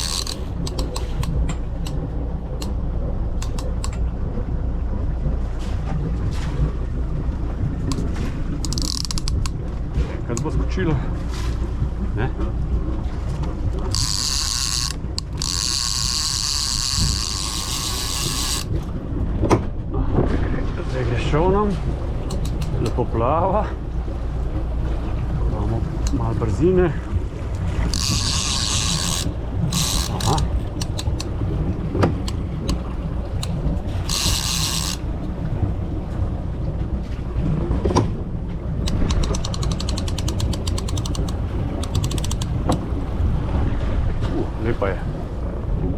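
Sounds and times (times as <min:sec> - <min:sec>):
fishing reel drag buzzing: 0:00.0 - 0:02.0, 0:03.4 - 0:03.9, 0:08.6 - 0:09.5, 0:13.8 - 0:18.8, 0:27.8 - 0:31.3, 0:33.4 - 0:35.1, 0:38.9 - 0:42.8
steady low rumble: 0:00.0 - 0:14.0, 0:14.6 - 0:45.9.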